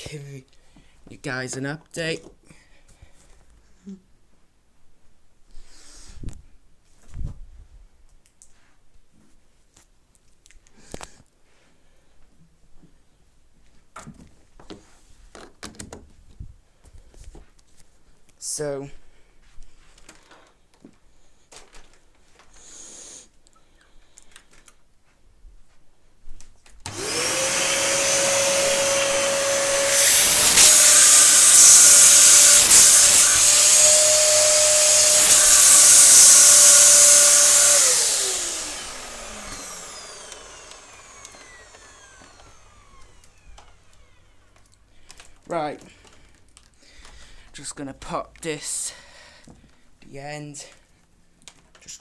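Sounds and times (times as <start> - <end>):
vacuum cleaner motor whining: 26.9 - 44.2.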